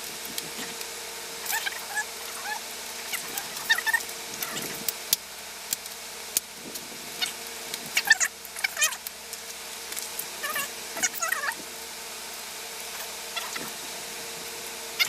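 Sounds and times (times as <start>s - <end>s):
plastic squeaks: 10.4s - 11.6s.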